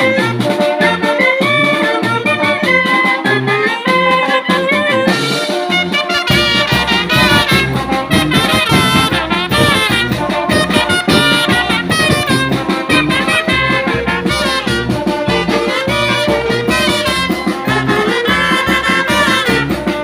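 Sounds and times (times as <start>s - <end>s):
brass band playing: 0.0s - 20.0s
heavy low bass line: 4.7s - 20.0s.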